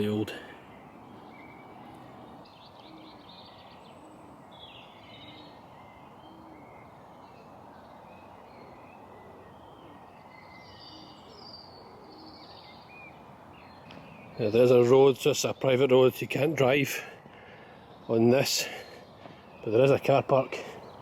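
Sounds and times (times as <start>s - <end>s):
birds singing and chirping: 0.0s - 21.0s
steady background noise: 0.0s - 21.0s.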